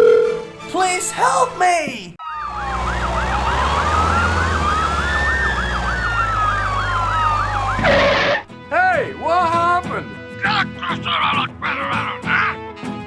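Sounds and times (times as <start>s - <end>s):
emergency siren yelp and wail: 2.2s - 8.4s.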